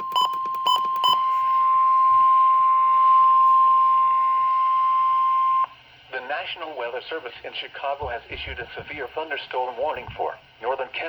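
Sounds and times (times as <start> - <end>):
steady alarm beep tone: 0.0 - 5.8.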